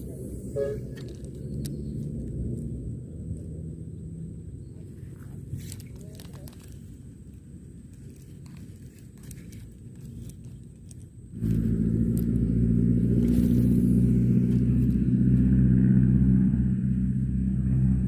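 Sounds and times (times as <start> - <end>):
engine running with low hum: 0.0 - 18.0.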